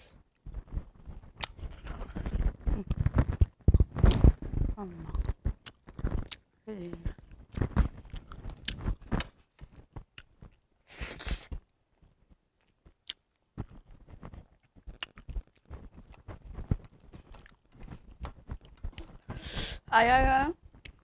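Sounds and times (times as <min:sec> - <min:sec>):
chewing and biting food: 0:00.4 - 0:06.5, 0:07.1 - 0:10.6, 0:12.6 - 0:19.4, 0:20.8 - 0:21.0.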